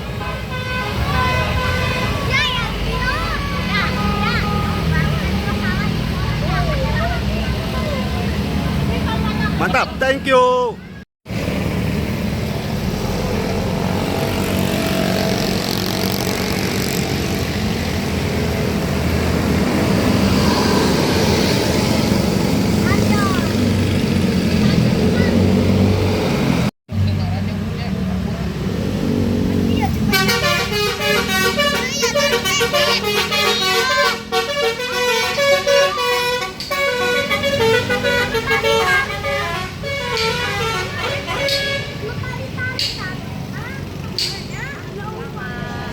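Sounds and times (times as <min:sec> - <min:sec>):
bus engine running: 0:00.0 - 0:45.9
road and wind noise: 0:00.0 - 0:45.9
multi-tone air horn melody: 0:30.1 - 0:42.1.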